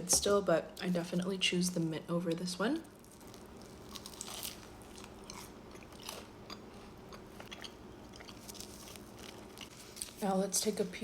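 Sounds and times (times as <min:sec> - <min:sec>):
chewing crispy food: 0:03.0 - 0:10.2.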